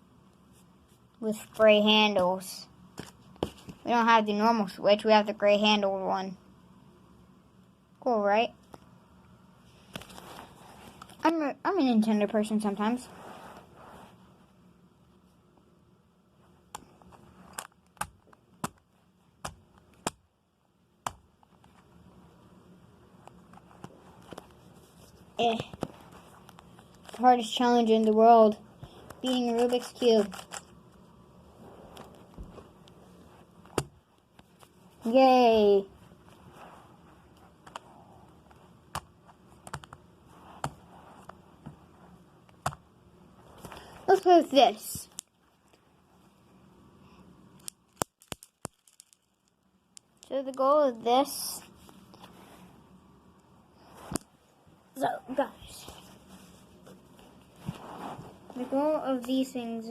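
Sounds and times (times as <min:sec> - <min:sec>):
small hard objects clicking: 0:47.6 - 0:50.3.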